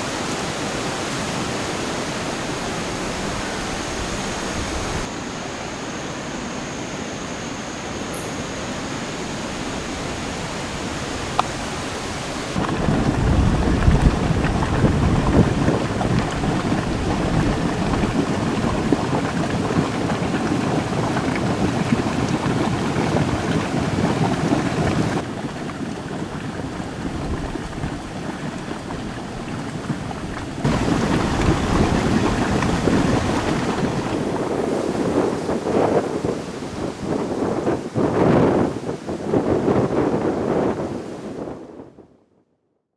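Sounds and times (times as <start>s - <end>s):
waterfall rushing: 0.0s - 20.5s, 30.6s - 34.8s.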